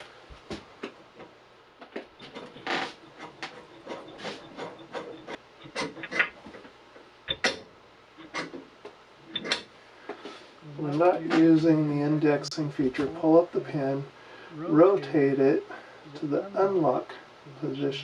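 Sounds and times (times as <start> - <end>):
short rubbing scrapes: 2.2 - 6.4.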